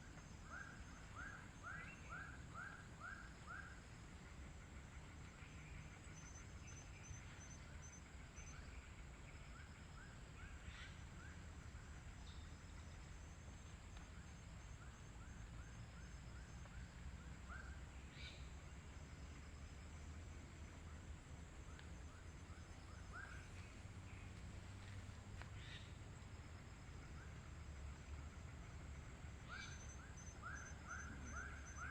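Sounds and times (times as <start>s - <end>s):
bird chirping: 4.7s - 16.9s, 17.5s - 20.0s, 21.7s - 26.0s, 28.0s - 31.9s.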